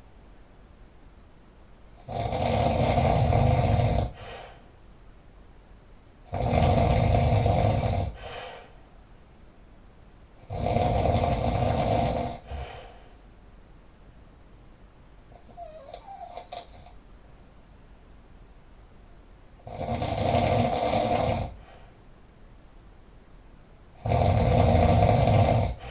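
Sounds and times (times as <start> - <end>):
loud snoring: 2.0 - 4.4, 6.2 - 8.6, 10.4 - 12.8, 15.4 - 17.0, 19.6 - 21.7, 24.0 - 25.9.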